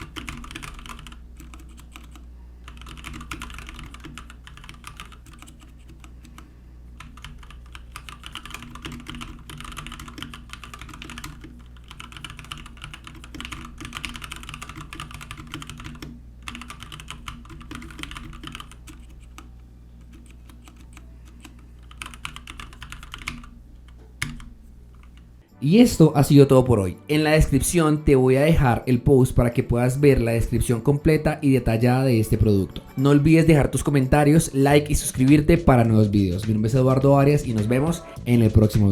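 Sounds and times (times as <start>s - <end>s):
mechanical keyboard typing: 0.0s - 25.3s, 33.9s - 38.1s.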